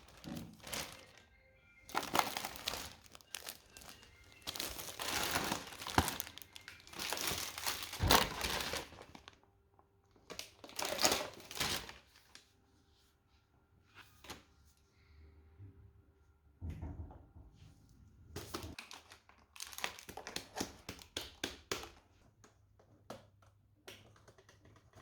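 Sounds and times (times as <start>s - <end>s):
crinkly packaging rustling: 0.0s - 9.5s, 10.1s - 12.5s, 18.4s - 21.1s.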